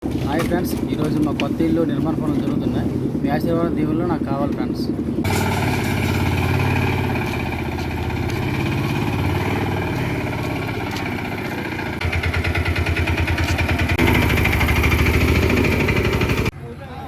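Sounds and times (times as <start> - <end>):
machine engine chugging: 5.2 - 16.5.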